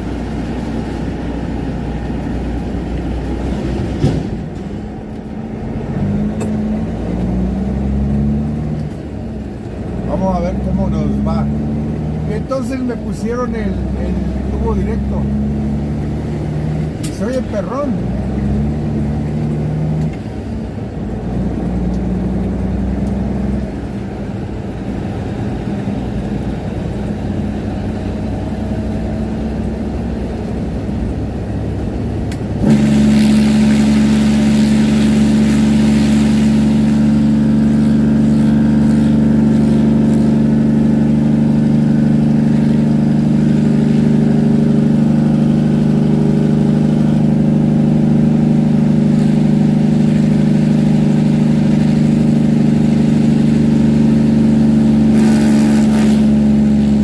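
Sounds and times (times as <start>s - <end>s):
diesel truck engine: 0.0s - 57.0s
engine brake exhaust growl: 27.3s - 53.2s.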